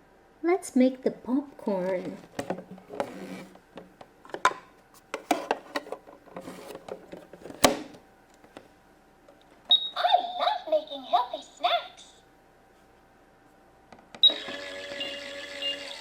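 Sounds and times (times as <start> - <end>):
high electronic toy beep: 9.7 - 10.1, 14.2 - 16.0.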